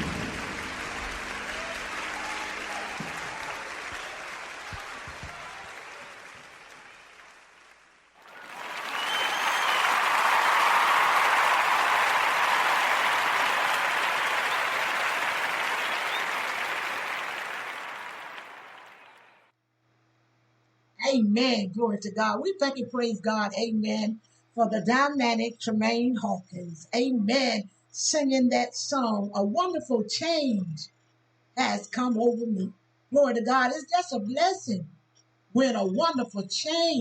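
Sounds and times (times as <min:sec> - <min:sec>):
audience applause: 0:00.0 - 0:19.5
crowd cheering: 0:00.0 - 0:19.5.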